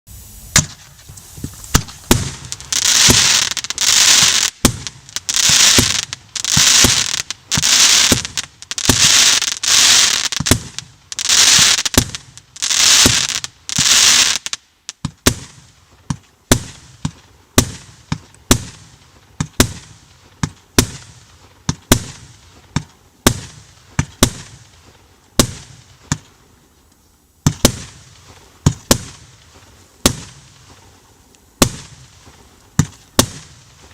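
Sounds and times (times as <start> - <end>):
firework hissing bursts: 0.1 - 15.8, 27.3 - 33.9
firework battery firing: 0.1 - 24.8, 25.4 - 26.3, 27.4 - 30.9, 31.6 - 33.9
firework sharp bangs: 0.1 - 26.4, 27.4 - 31.0, 31.6 - 33.9.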